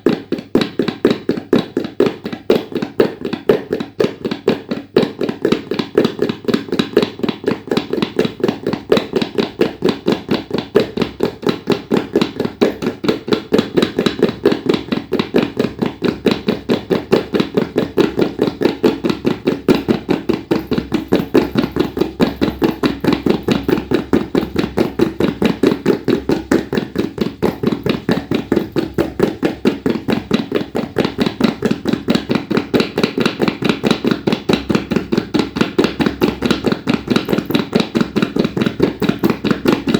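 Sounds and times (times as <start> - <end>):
tabla fast strokes: 0.0 - 39.9.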